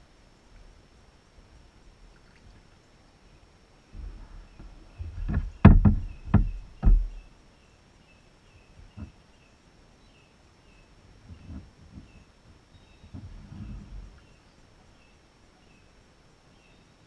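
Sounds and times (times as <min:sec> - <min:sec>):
faint chirping: 0:00.4 - 0:17.0
knocks on a kayak hull: 0:05.2 - 0:07.2.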